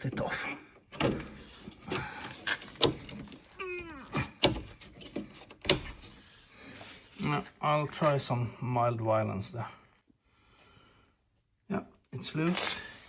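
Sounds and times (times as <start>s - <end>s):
trim clicks and knocks: 0.8s - 6.2s.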